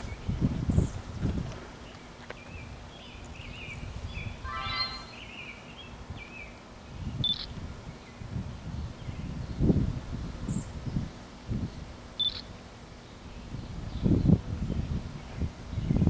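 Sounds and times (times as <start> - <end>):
small birds chirping: 1.8 - 8.2.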